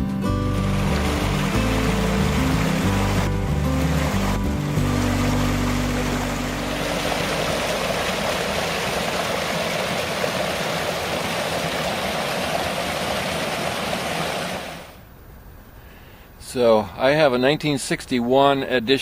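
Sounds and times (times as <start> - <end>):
steady rushing noise: 0.6 - 15.0.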